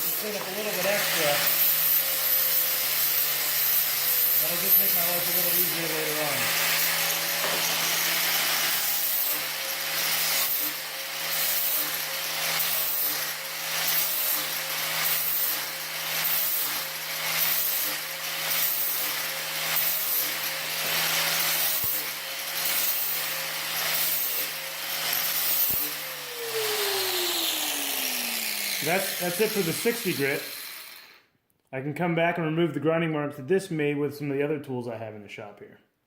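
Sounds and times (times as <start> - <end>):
angle grinder motor whine: 4.1 - 10.6, 24.2 - 31.2.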